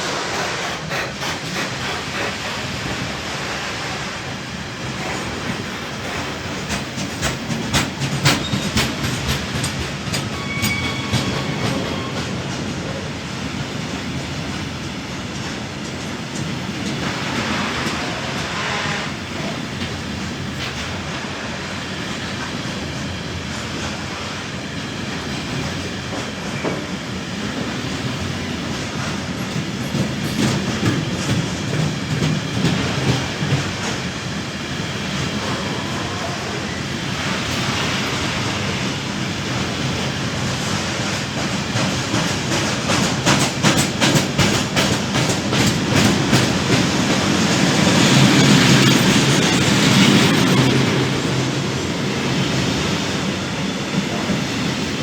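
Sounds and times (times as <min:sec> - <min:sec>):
freight train wheels clacking: 0:00.0 - 0:55.0
faint wheel squeal: 0:10.4 - 0:12.3.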